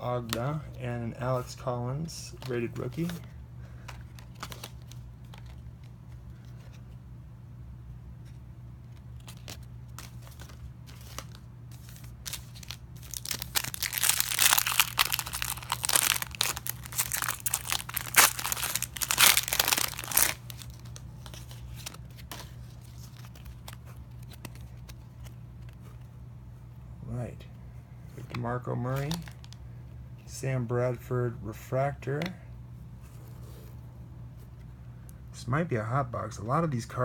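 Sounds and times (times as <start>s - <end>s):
steady low hum: 0.0s - 37.0s
wrapper crinkling and tearing: 9.2s - 24.6s, 29.0s - 29.6s.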